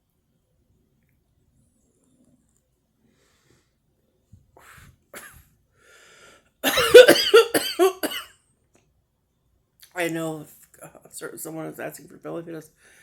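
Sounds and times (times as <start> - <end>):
faint breaths: 3.0 - 6.6, 12.7 - 13.0
person coughing hard: 6.6 - 8.3.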